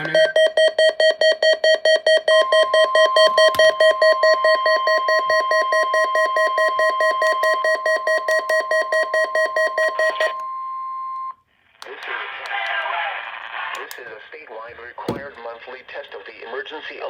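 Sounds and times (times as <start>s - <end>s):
rapid pulsing beep: 0.0s - 11.3s
steady warning tone: 0.0s - 11.3s.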